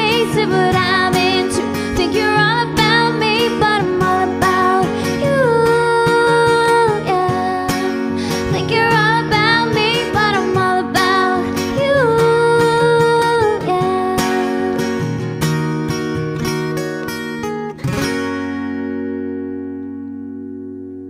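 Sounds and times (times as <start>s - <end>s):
strummed acoustic guitar: 0.0s - 21.0s.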